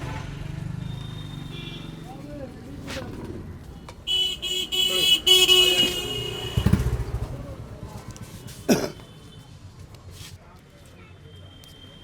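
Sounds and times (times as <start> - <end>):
street traffic rumble: 0.0 - 12.0
vehicle horn honking: 0.8 - 2.0, 4.1 - 7.1.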